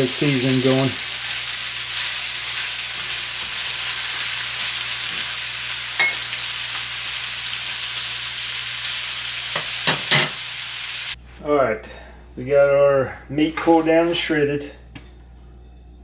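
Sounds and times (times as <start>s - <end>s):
onions sizzling in oil: 0.0s - 11.2s.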